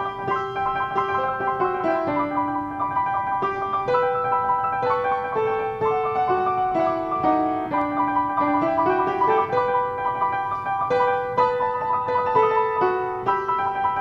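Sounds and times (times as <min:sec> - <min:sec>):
piano melody: 0:00.0 - 0:14.0.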